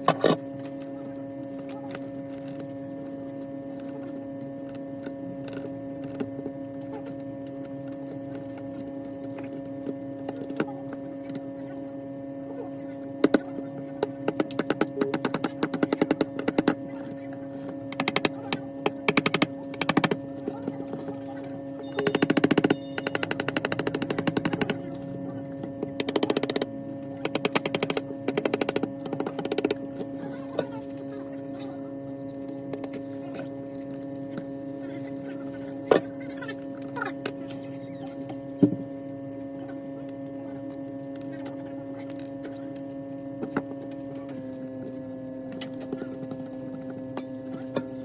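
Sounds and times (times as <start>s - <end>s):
machine electrical hum: 0.0s - 48.0s
small tool clicks and taps: 14.3s - 16.8s, 17.9s - 20.2s, 21.9s - 24.8s, 25.9s - 29.8s.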